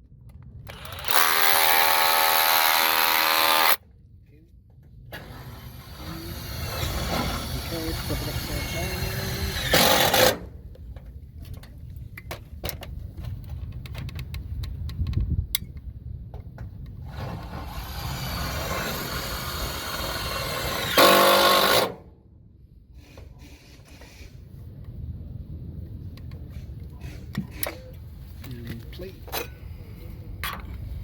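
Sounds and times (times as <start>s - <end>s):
power tool bursts: 5.2s - 10.4s, 17.2s - 22.0s
steady low rumble: 10.4s - 20.9s, 24.3s - 31.0s.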